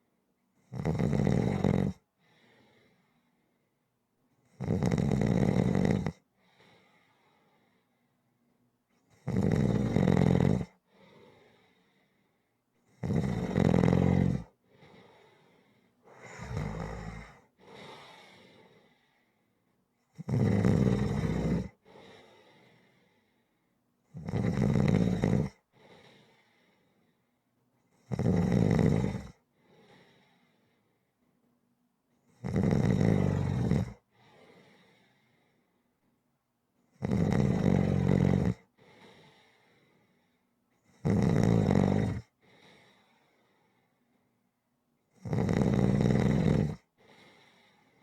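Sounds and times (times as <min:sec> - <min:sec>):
loud rattling snore: 0:00.7 - 0:02.0, 0:04.6 - 0:06.2, 0:09.2 - 0:10.8, 0:13.0 - 0:14.5, 0:16.2 - 0:17.4, 0:20.2 - 0:21.8, 0:24.2 - 0:25.6, 0:28.1 - 0:29.4, 0:32.4 - 0:34.0, 0:37.0 - 0:38.7, 0:41.0 - 0:42.3, 0:45.2 - 0:46.9
soft breath out: 0:02.2 - 0:03.7, 0:06.4 - 0:08.2, 0:10.9 - 0:12.4, 0:14.6 - 0:16.5, 0:17.3 - 0:19.5, 0:21.8 - 0:23.7, 0:25.7 - 0:27.3, 0:29.5 - 0:31.1, 0:34.1 - 0:35.8, 0:38.8 - 0:40.5, 0:42.4 - 0:44.3, 0:47.0 - 0:48.0.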